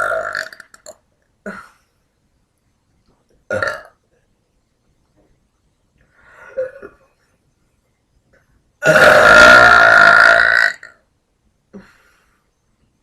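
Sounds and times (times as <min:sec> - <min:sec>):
woman burping loudly: 0:00.0 - 0:01.8, 0:03.5 - 0:04.0, 0:08.8 - 0:11.0.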